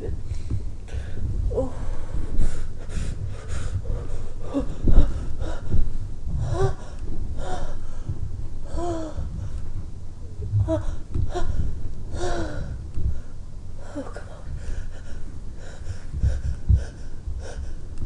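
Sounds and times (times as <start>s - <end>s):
woman gasping and moaning: 0.9s - 9.6s, 10.4s - 12.8s.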